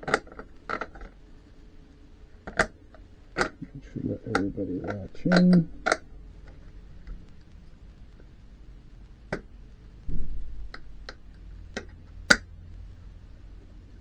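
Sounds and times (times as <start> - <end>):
plastic parts clicking into place: 4.3 - 7.2
low bump: 10.1 - 11.6.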